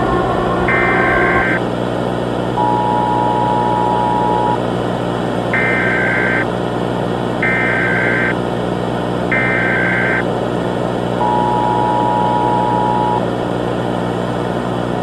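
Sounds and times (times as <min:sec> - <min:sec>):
digital data-burst squawks: 0:00.0 - 0:01.6
static hiss with low drone: 0:00.0 - 0:02.6.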